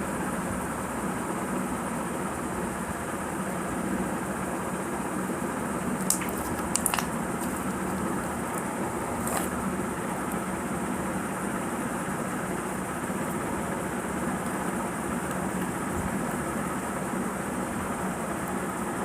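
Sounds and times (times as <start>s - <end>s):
small sharp pops and clicks: 6.0s - 8.7s
slime squishing: 6.0s - 9.7s.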